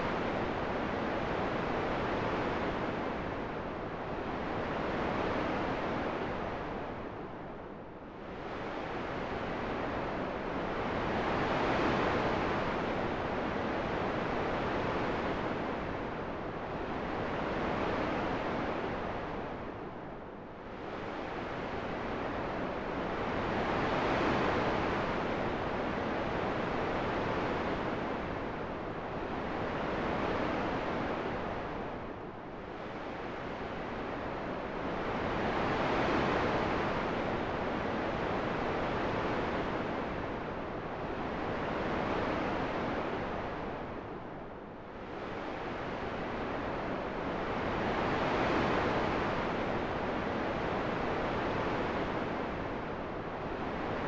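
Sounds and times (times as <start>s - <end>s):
rushing wind: 20.5s - 37.3s.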